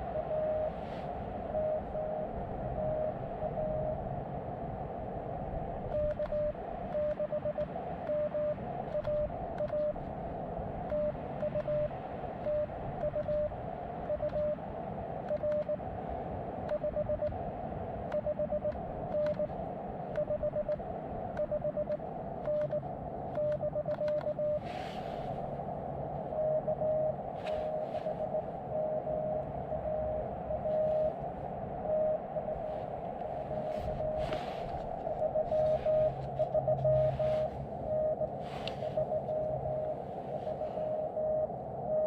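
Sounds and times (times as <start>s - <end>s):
morse code tone: 0.0s - 0.8s, 1.5s - 4.0s, 5.9s - 10.0s, 10.9s - 11.9s, 12.5s - 13.5s, 14.1s - 14.6s, 16.7s - 17.3s, 18.2s - 19.5s, 20.2s - 20.8s, 21.4s - 22.8s, 23.4s - 24.6s, 26.3s - 31.2s, 31.8s - 32.7s, 33.4s - 42.0s
radio receiver hiss: 30.6s - 41.2s.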